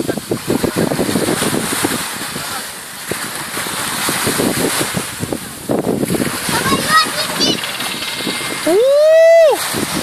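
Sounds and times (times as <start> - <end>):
wind noise on microphone: 0.0 - 10.0
helicopter rotor blades beating: 6.2 - 9.0.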